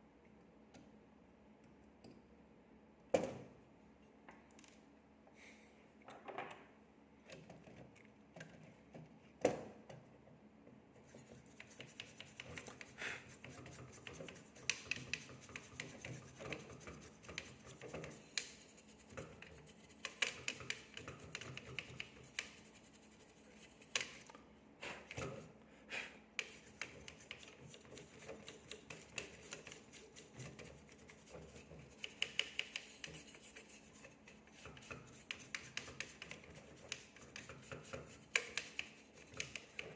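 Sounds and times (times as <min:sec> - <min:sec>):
scratchy rubbing of plastic: 0:11.0 - 0:24.2, 0:26.4 - 0:39.9
small clicks and taps: 0:11.2 - 0:22.6, 0:31.2 - 0:33.7, 0:34.6 - 0:39.9.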